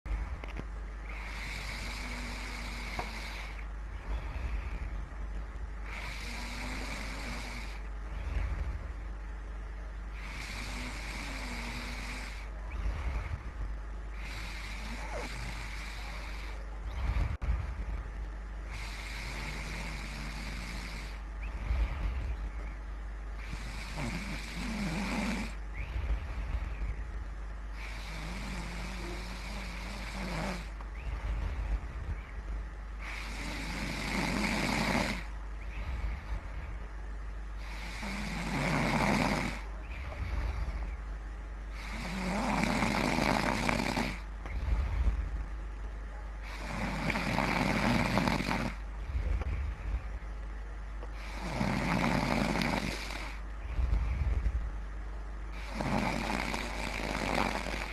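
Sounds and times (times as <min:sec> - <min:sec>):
steady low hum: 0:00.0 - 0:57.9
person snoring: 0:01.0 - 0:04.8, 0:05.8 - 0:07.9, 0:10.2 - 0:13.4, 0:14.1 - 0:17.4, 0:18.7 - 0:22.4, 0:23.4 - 0:25.6, 0:27.7 - 0:30.8, 0:33.0 - 0:36.4, 0:37.6 - 0:40.9, 0:41.7 - 0:45.2, 0:46.4 - 0:49.7, 0:51.2 - 0:54.4, 0:55.5 - 0:57.9.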